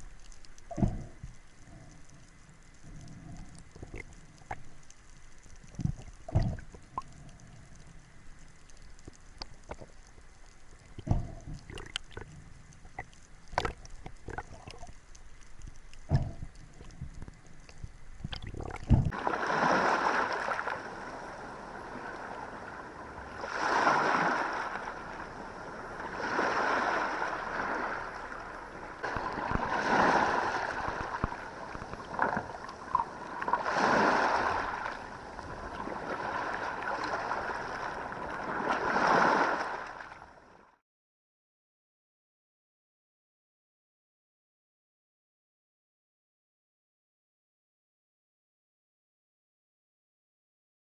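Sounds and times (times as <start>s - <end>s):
sea water washing in: 18.2s - 40.3s.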